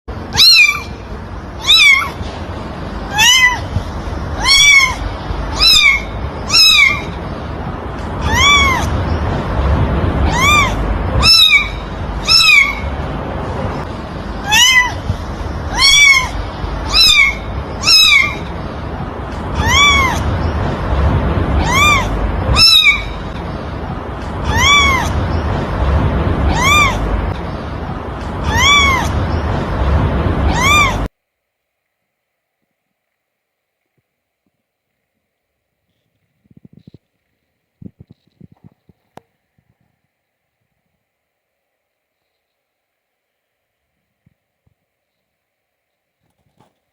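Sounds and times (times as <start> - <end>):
steady low hum: 0.1 - 46.2
kitten meowing: 0.3 - 2.2, 3.1 - 7.2, 8.2 - 9.1, 10.2 - 13.0, 14.4 - 18.6, 19.5 - 20.5, 21.6 - 23.4, 24.4 - 25.4, 26.5 - 27.1, 28.4 - 29.4, 30.5 - 31.1.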